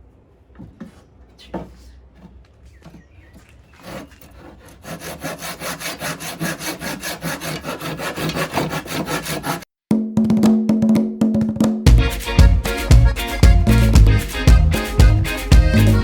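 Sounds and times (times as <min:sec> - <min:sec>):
sandpaper rubbing on wood: 0:03.7 - 0:09.6.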